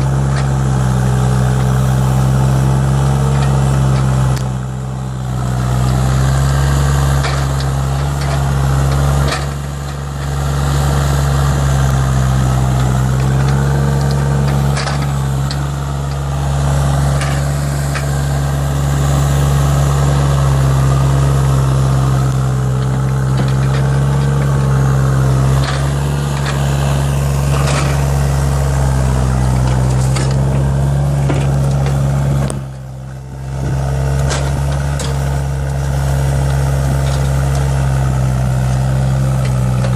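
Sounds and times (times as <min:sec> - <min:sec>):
excavator diesel engine running: 0:00.0 - 0:39.9
knocks and clanks: 0:12.8 - 0:15.7, 0:29.6 - 0:32.8, 0:33.6 - 0:35.2.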